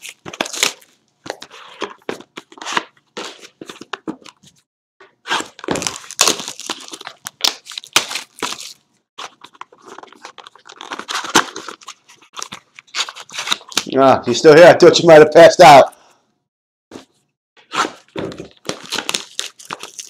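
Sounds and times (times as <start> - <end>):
shrink wrap and cardboard tearing: 0.0 - 3.5, 5.2 - 13.9, 17.7 - 20.0.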